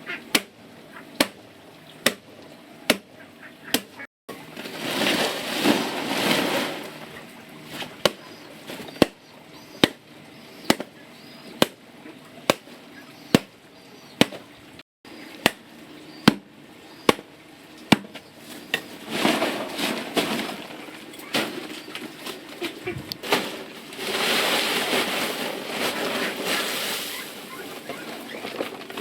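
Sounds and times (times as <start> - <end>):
chopping strikes: 0.3 - 0.6, 2.0 - 2.3, 2.9 - 3.1, 3.7 - 4.0, 9.8 - 10.0, 10.7 - 10.9, 11.6 - 11.8, 13.3 - 13.5, 14.2 - 14.4, 15.4 - 17.3, 17.9 - 18.9
rustling: 4.4 - 9.1, 18.4 - 29.0.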